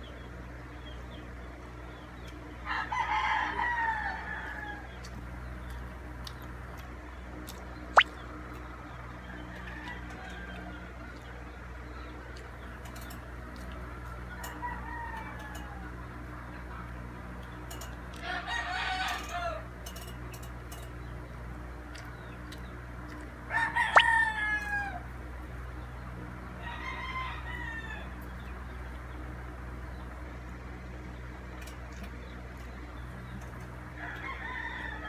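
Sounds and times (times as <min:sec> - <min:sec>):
roosters crowing: 0:02.6 - 0:06.0, 0:09.1 - 0:11.2, 0:13.8 - 0:30.0, 0:33.1 - 0:35.0.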